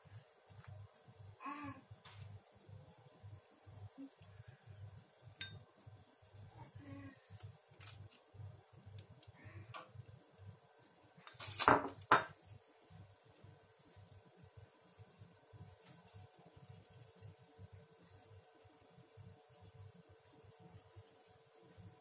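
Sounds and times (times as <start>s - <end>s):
kitchenware clinking: 5.4s - 5.6s, 11.4s - 12.4s.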